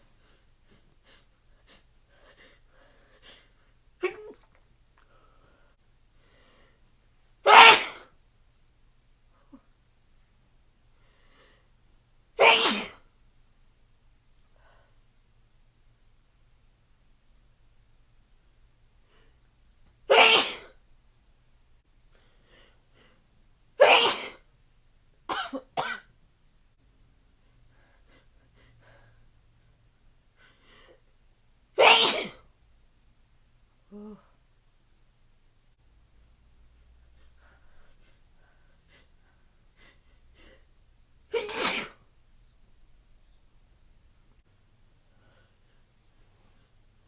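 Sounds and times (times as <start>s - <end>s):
person sneezing: 7.5s - 8.1s, 12.4s - 13.0s, 20.1s - 20.8s, 23.8s - 24.4s, 31.8s - 32.5s, 41.3s - 42.0s.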